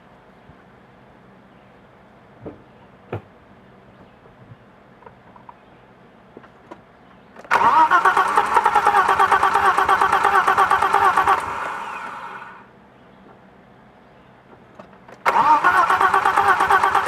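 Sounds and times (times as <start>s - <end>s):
engine cranking on starter: 7.4s - 12.6s, 14.8s - 17.0s
starter whir: 7.4s - 12.6s, 14.8s - 17.0s.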